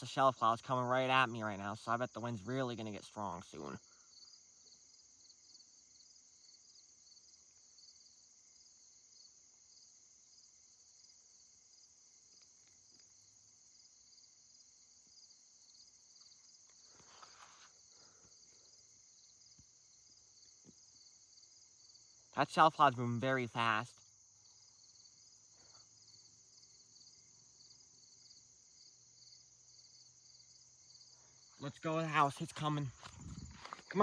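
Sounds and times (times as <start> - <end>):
crickets chirping: 0.0 - 34.0
faint rustle: 16.1 - 18.7, 32.4 - 34.0.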